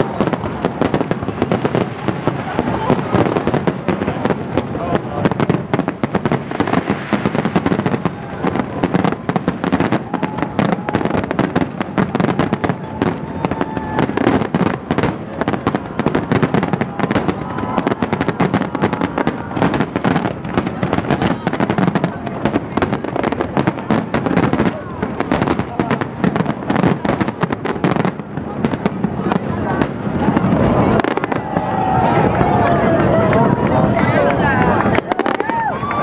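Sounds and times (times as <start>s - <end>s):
fireworks crackling and popping: 0.0s - 36.0s.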